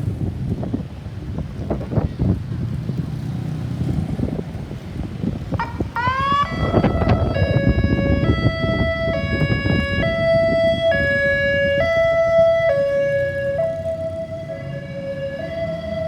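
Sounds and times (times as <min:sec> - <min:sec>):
vehicle engine and road rumble: 0:00.0 - 0:16.0
ambulance siren two-tone: 0:05.6 - 0:16.0.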